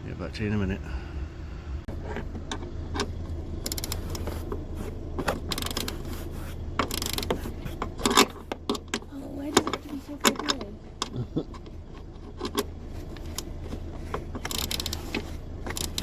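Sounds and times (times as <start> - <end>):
ratchet spanner clicking: 2.5 - 4.3, 5.4 - 6.1, 6.8 - 9.0, 14.2 - 16.0.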